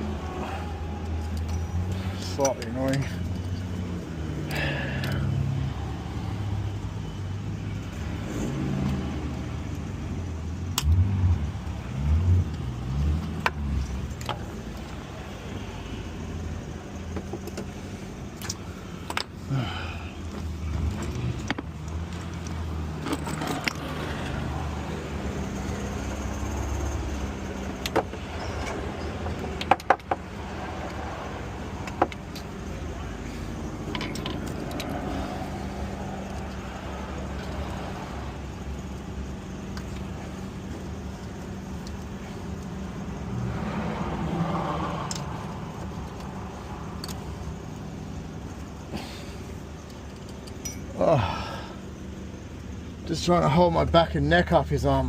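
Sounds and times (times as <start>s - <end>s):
metal hand tools clicking and scraping: 20.9s - 24.3s, 33.6s - 37.7s.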